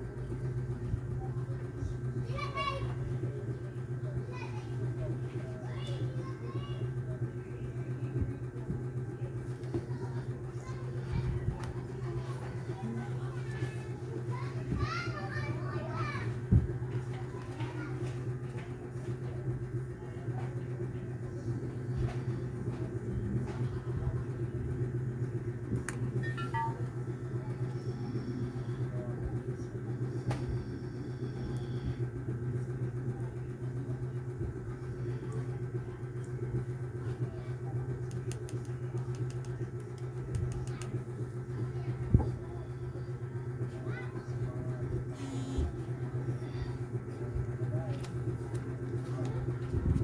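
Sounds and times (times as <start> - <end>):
steady low hum: 0.0 - 50.0
faint clicks and taps: 38.0 - 41.4, 47.4 - 50.0.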